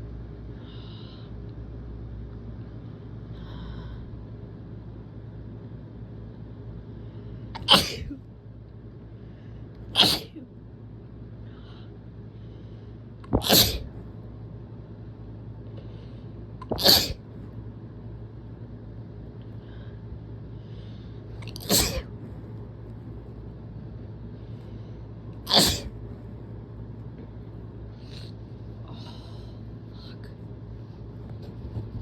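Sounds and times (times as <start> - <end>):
person sneezing hard: 7.6 - 8.2, 10.0 - 10.4, 13.3 - 13.9, 16.6 - 17.2, 21.5 - 22.1, 25.5 - 25.9.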